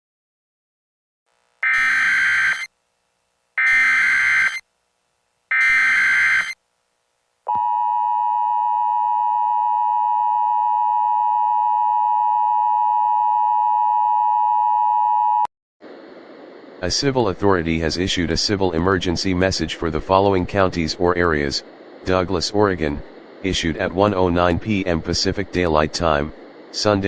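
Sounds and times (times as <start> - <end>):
digital data bursts: 1.6 - 2.7, 3.6 - 4.6, 5.5 - 6.6
steady alert tone: 1.6 - 2.7, 3.6 - 4.6.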